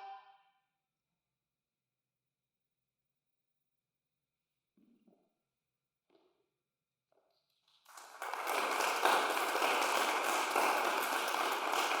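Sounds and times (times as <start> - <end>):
audience applause: 7.9 - 12.0.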